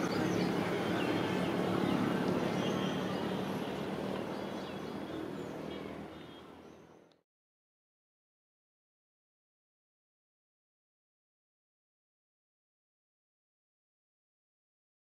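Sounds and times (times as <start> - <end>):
birds chirping: 0.0 - 7.1.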